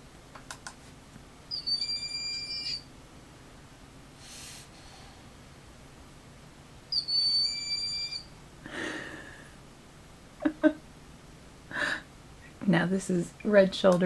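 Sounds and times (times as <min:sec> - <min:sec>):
high whistled bird call: 0:01.5 - 0:02.9, 0:06.9 - 0:08.3.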